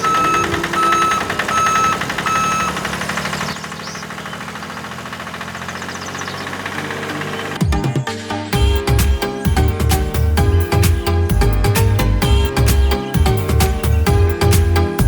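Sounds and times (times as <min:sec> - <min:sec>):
high beeps: 0:00.0 - 0:02.8
small engine knocking: 0:00.0 - 0:07.8.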